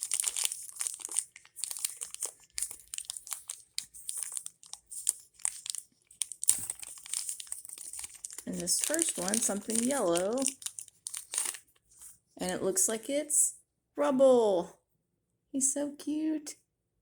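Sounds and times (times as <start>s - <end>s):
plastic package crinkling: 0.0s - 12.1s.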